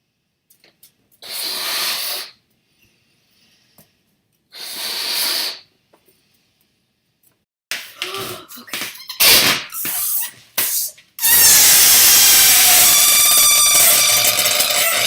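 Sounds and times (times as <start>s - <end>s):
air hissing from balloon neck: 1.2s - 2.4s, 4.5s - 5.7s, 9.7s - 15.0s.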